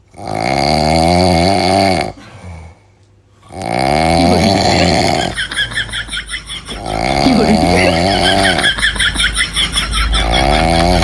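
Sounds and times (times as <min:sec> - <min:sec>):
man snoring loudly: 0:00.1 - 0:02.2, 0:03.5 - 0:05.4, 0:06.7 - 0:08.8, 0:10.2 - 0:11.0.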